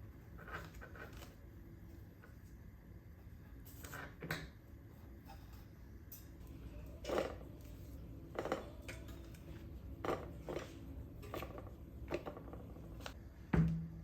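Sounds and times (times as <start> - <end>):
dishes and utensils clinking: 3.6 - 12.5.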